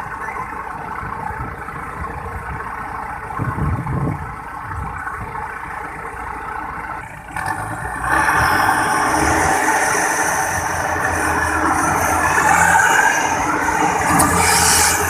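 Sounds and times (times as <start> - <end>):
heavy machinery engine revving: 6.8 - 15.0
hiss and whine: 8.6 - 15.0.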